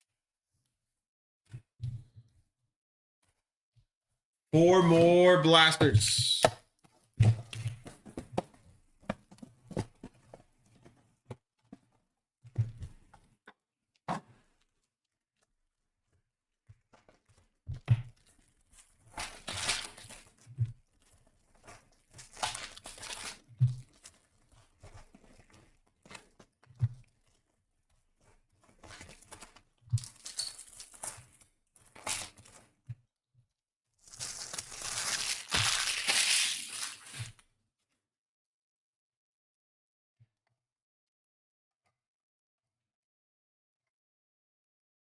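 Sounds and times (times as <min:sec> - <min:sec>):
wrappers tearing and crinkling: 0:19.2 - 0:20.3, 0:22.2 - 0:24.3, 0:28.9 - 0:32.6, 0:34.0 - 0:37.4.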